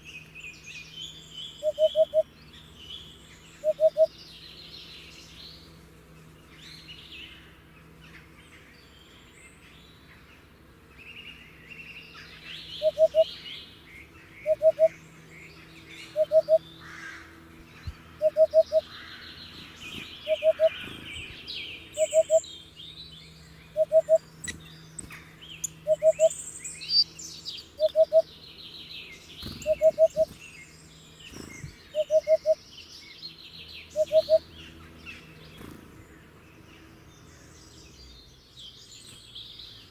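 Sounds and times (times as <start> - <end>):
small birds chirping: 0.0 - 39.9
hoopoe calling low notes: 16.2 - 16.6, 18.2 - 18.9, 20.2 - 20.9, 22.0 - 22.4, 23.8 - 24.2, 32.0 - 32.6.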